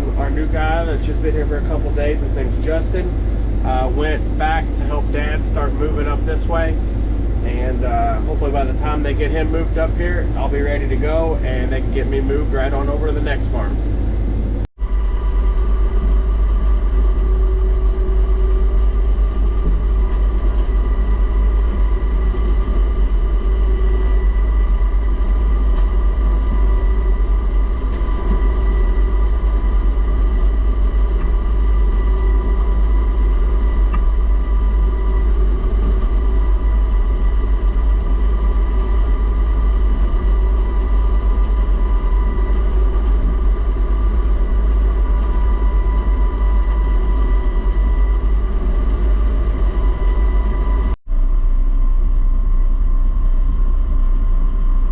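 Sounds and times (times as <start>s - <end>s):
combine harvester rumbling: 0.0s - 54.9s.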